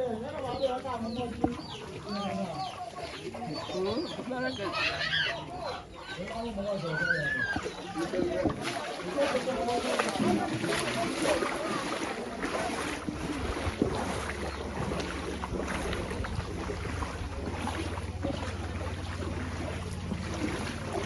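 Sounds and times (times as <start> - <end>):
outdoor background noise: 0.0 - 21.0
low engine hum: 9.3 - 21.0
wind buffeting microphone: 9.6 - 21.0.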